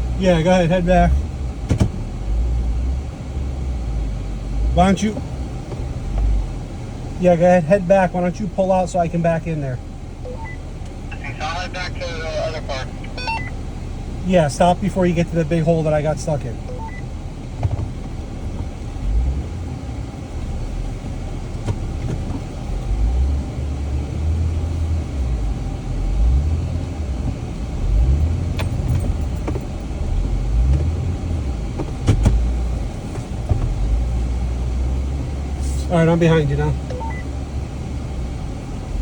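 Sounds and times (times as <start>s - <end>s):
vehicle engine rumble: 0.0s - 39.0s
vehicle body knocks: 1.6s - 2.0s, 31.7s - 32.5s.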